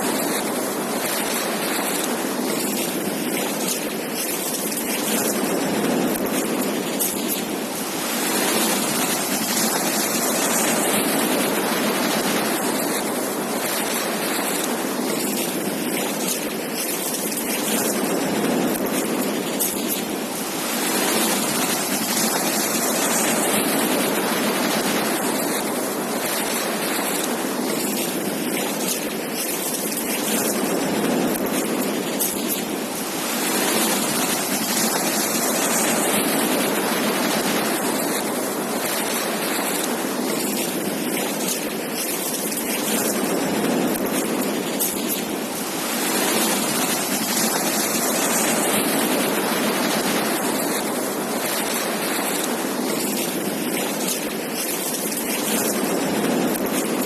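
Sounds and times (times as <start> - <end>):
sea surf washing onto beach: 0.0 - 57.0.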